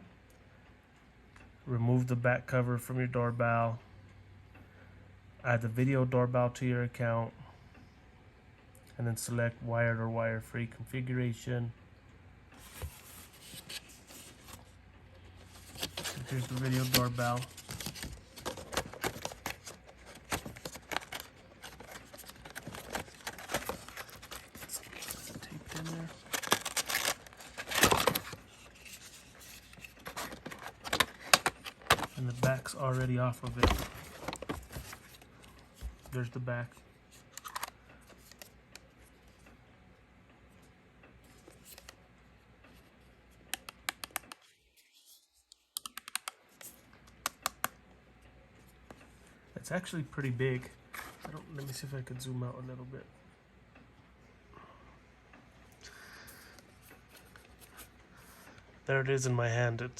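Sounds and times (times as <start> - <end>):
packaging clicks and rustles: 15.4 - 36.4, 37.1 - 38.6.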